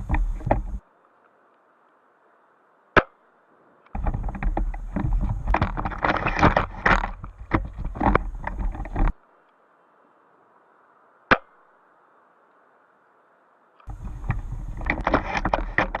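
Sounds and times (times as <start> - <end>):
rustling and scraping at microphone: 0.0 - 1.6, 3.6 - 9.6, 13.8 - 16.0.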